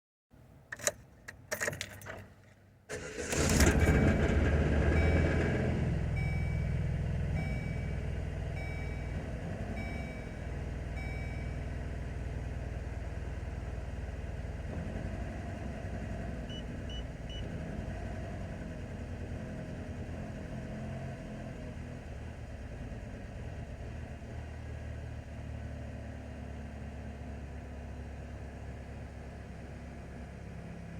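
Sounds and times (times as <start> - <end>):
car engine starting and idling: 0.6 - 20.4
short beeps: 6.1 - 6.8, 7.4 - 9.2, 9.8 - 11.6
repeating beep: 7.4 - 8.0.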